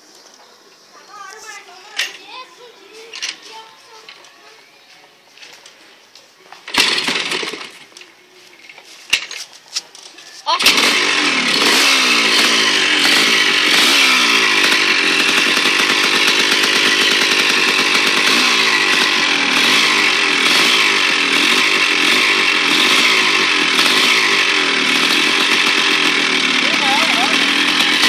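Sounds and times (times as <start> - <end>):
motorcycle engine revving: 6.6 - 7.9, 10.5 - 28.0.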